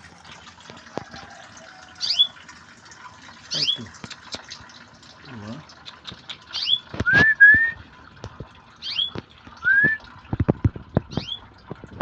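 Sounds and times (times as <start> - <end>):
canaries chirping: 6.3 - 6.9, 8.8 - 9.2.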